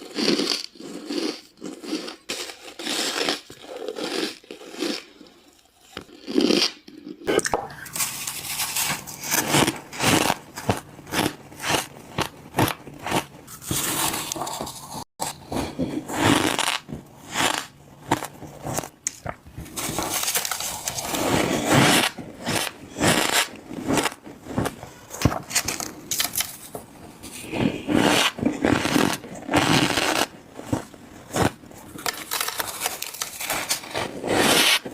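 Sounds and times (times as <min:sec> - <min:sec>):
ice crunching: 0:07.9 - 0:34.9.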